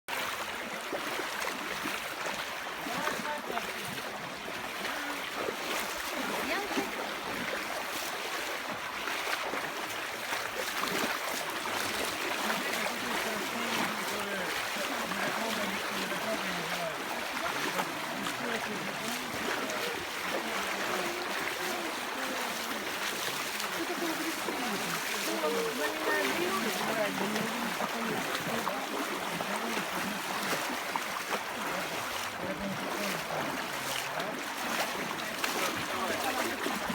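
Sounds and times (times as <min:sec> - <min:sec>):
stream water running: 0:00.1 - 0:36.9
faint voices: 0:12.3 - 0:36.9.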